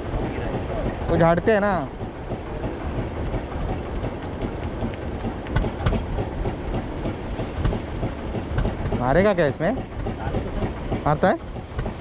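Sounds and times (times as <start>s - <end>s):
boat engine rumble: 0.0s - 12.0s
water and hull noise: 0.0s - 12.0s.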